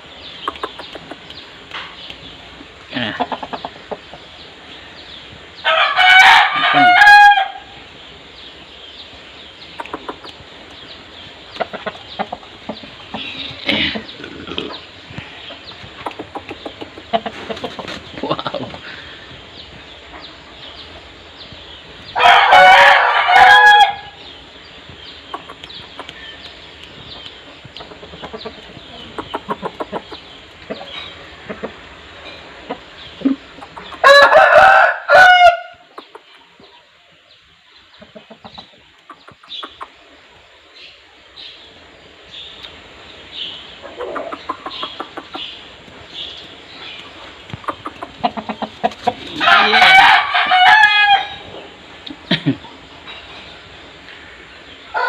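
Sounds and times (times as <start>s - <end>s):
rooster crowing: 5.6s - 7.8s, 22.1s - 24.2s, 34.0s - 35.8s, 49.4s - 51.5s
soft short clucks: 9.8s - 10.4s, 44.0s - 45.4s, 47.0s - 49.2s.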